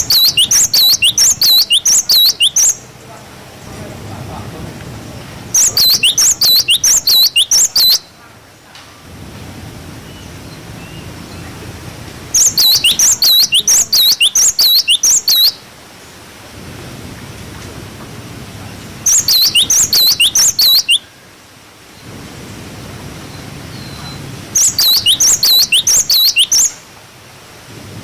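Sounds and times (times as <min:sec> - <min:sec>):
bird calling high swooping notes: 0:00.0 - 0:02.9, 0:05.6 - 0:08.0, 0:12.4 - 0:15.6, 0:19.1 - 0:21.0, 0:24.6 - 0:26.8
faint low background noise: 0:00.0 - 0:28.0.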